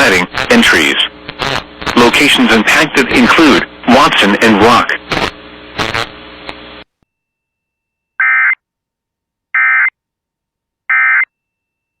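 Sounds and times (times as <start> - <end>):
buzzy digital data bursts: 0.0 - 6.2
faint broadcast hiss: 0.0 - 6.9.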